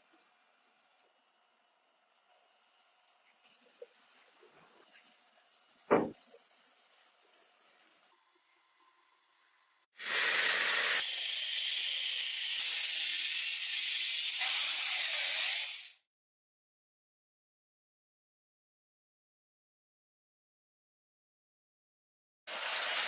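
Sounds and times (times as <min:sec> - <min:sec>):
short knock: 0:05.9 - 0:06.2.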